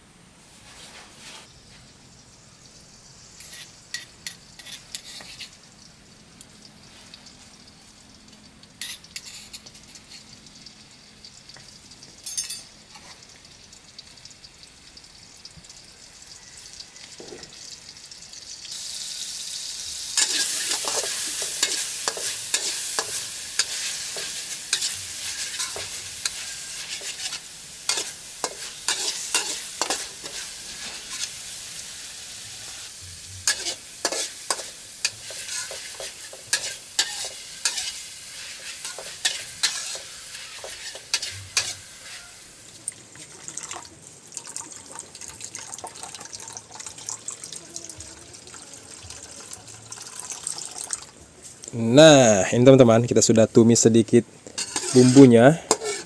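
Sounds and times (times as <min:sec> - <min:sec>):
spice paste sizzling in oil: 0:00.5 - 0:56.0
spatula clattering in pan: 0:20.2 - 0:30.5, 0:33.4 - 0:41.8, 0:54.5 - 0:56.0.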